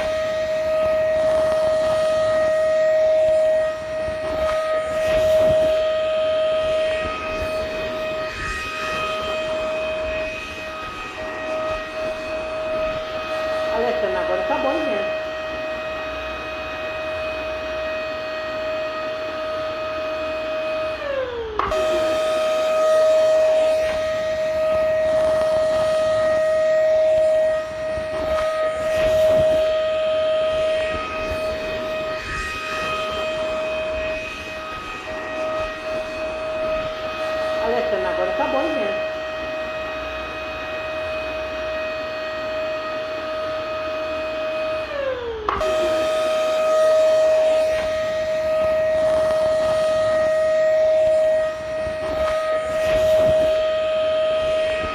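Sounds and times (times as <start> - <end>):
vacuum cleaner running: 0.0 - 54.9.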